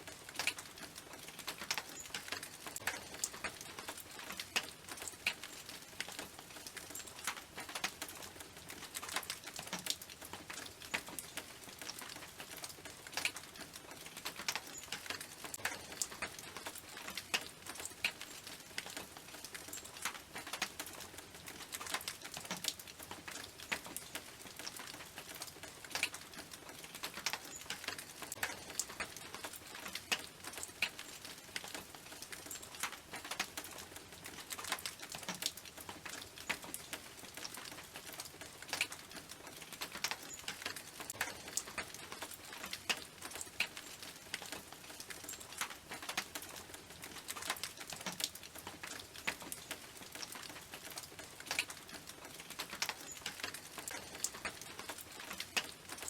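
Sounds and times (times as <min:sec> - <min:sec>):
patter of light rain: 0:00.0 - 0:56.0
raindrops pinging on tin roof: 0:00.0 - 0:56.0.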